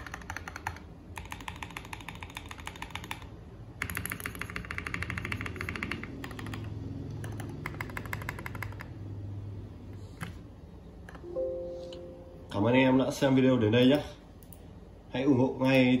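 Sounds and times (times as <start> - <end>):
fast mechanical keyboard typing: 0.0 - 9.1.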